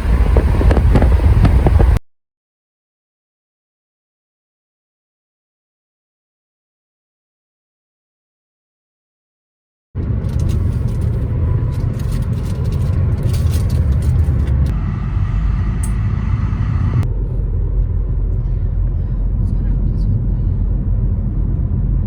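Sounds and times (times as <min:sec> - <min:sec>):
moving car rumble: 0:00.0 - 0:02.0, 0:10.0 - 0:22.0.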